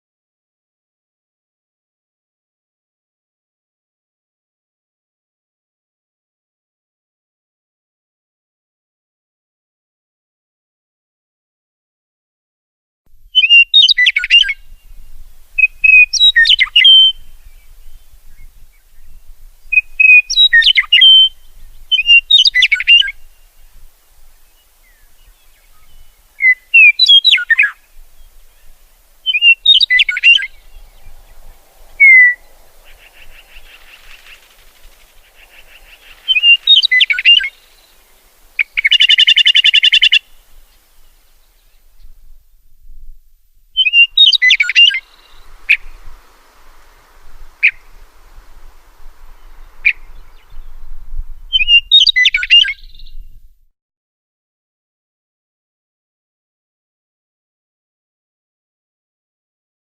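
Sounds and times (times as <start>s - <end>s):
songbird chirping and whistling: 13.3s - 42.2s, 43.8s - 53.4s
harsh buzzy bird call: 24.6s - 41.1s, 43.8s - 50.8s.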